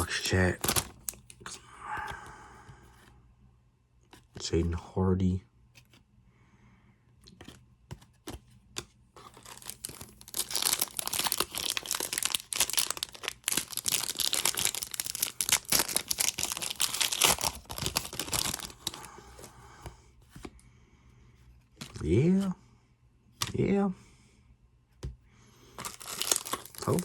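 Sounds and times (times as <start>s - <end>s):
wrapper tearing and crinkling: 0.0s - 1.2s, 9.2s - 19.0s, 25.8s - 27.0s.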